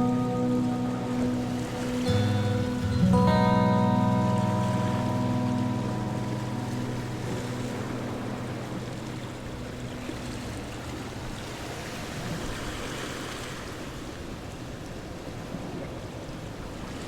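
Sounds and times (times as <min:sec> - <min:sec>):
guitar music: 0:00.0 - 0:12.2.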